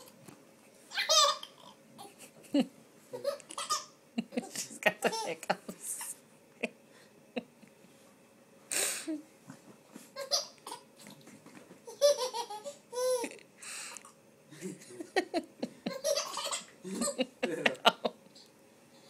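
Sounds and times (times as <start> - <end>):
person laughing uncontrollably: 4.2 - 5.8, 14.6 - 18.2.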